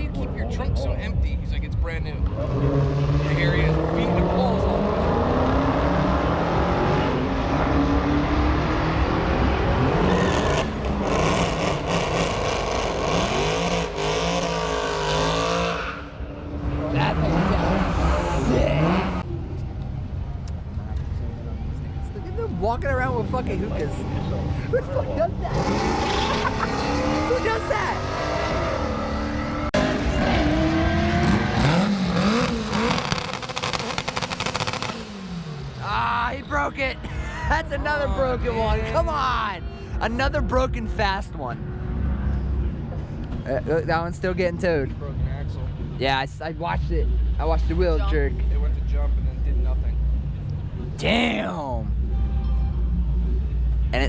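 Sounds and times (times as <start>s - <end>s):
drag car engine accelerating: 2.2s - 19.2s, 25.4s - 35.8s.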